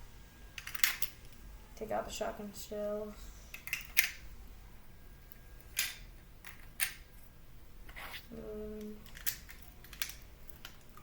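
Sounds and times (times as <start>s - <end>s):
plastic pieces clicking: 8.8s - 11.0s.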